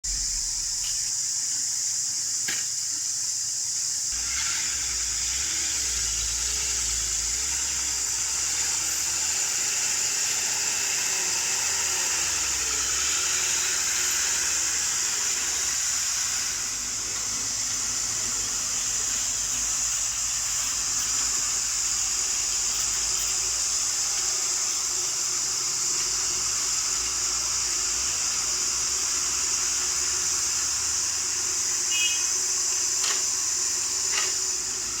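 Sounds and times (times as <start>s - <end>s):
low rumble: 0.0s - 1.1s
high-pitched hiss: 0.0s - 35.0s
excavator diesel engine: 4.1s - 35.0s.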